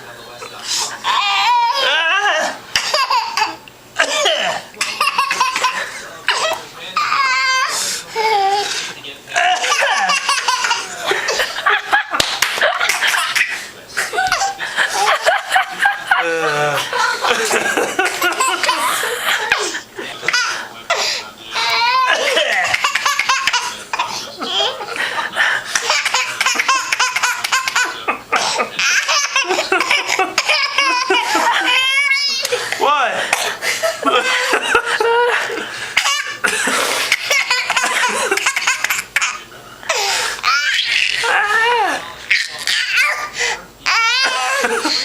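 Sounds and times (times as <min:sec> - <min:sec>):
baby laughing: 0:02.7 - 0:03.6, 0:04.8 - 0:08.6, 0:09.4 - 0:32.8, 0:36.0 - 0:45.0
child coughing: 0:03.4 - 0:05.0
small child laughing: 0:28.8 - 0:32.6.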